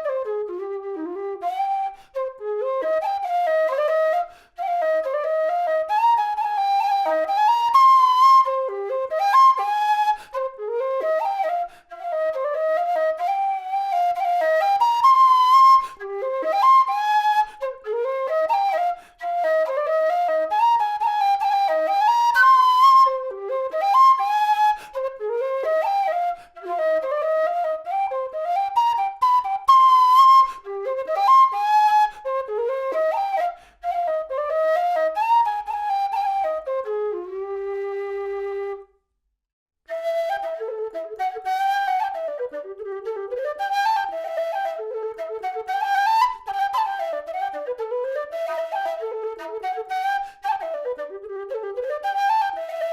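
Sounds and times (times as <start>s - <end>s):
low whistle melody: 0.0s - 39.0s, 39.9s - 52.9s.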